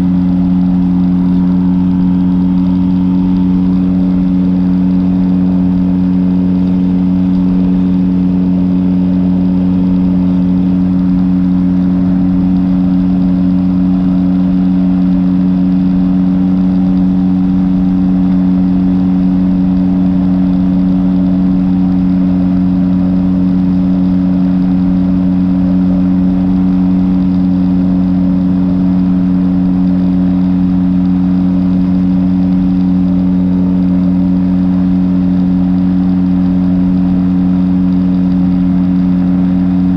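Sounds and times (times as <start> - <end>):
air noise: 0.0 - 6.6
two-stroke engine running: 0.0 - 39.9.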